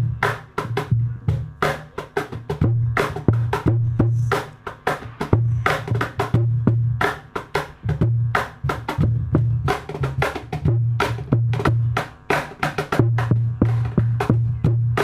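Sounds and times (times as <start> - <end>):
stompbox bass thumps: 0.0 - 15.0
cajon slaps and taps: 7.0 - 9.1, 9.7 - 14.4.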